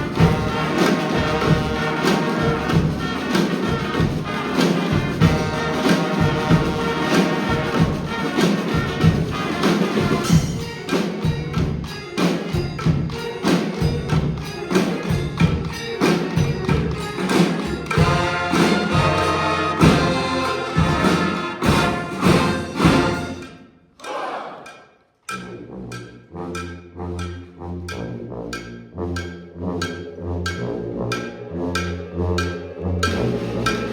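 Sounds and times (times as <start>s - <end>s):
horns playing a tune: 0.0s - 10.7s, 17.3s - 24.6s
steady drum beat: 0.0s - 24.8s.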